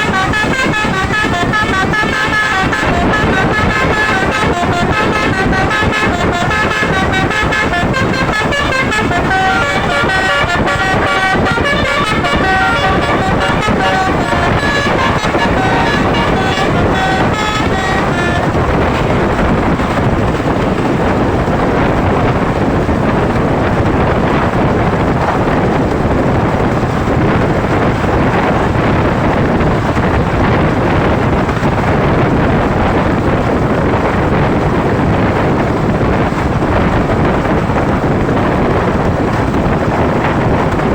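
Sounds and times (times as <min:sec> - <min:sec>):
bus trumpet horns melody: 0:00.0 - 0:22.5, 0:26.1 - 0:31.2
wind and road noise: 0:00.0 - 0:40.9.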